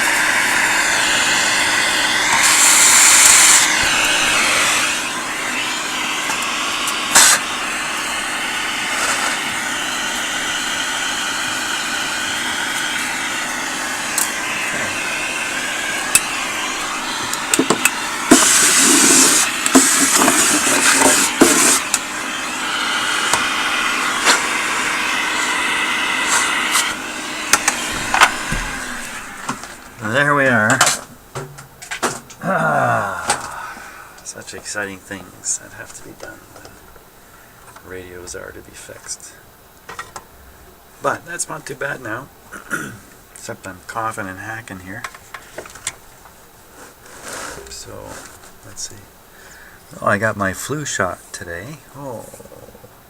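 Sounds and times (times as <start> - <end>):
vacuum cleaner running: 0.0 - 31.2, 32.0 - 37.1, 43.5 - 52.5.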